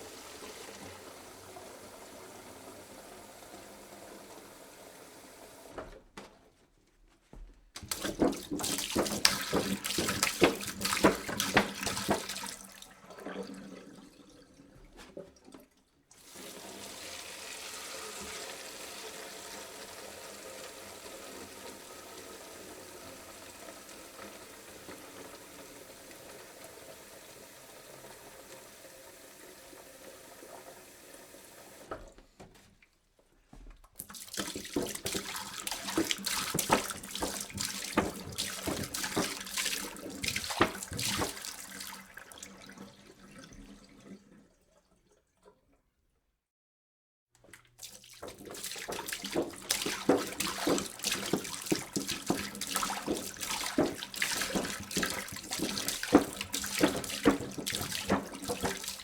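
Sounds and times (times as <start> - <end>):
water pouring into a jug: 0.0 - 5.2, 7.9 - 32.0, 34.0 - 45.8, 47.5 - 59.0
quiet steady watery sound: 0.0 - 5.8, 32.8 - 46.2.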